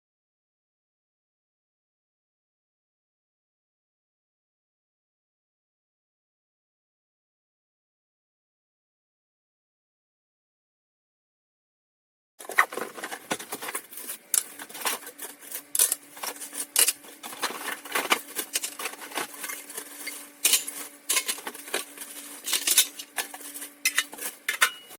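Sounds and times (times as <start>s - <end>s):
baking pans clattering: 12.4s - 24.9s.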